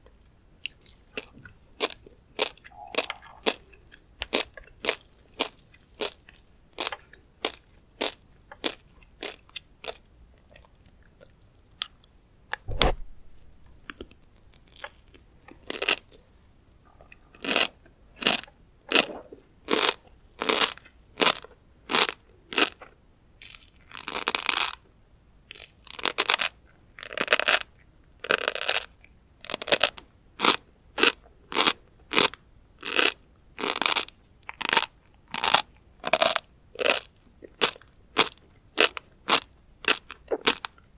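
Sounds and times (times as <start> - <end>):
crunchy chewing: 0.0 - 12.1, 13.8 - 16.3, 16.9 - 24.8, 25.5 - 40.9
sharp click with low thump: 12.6 - 13.3.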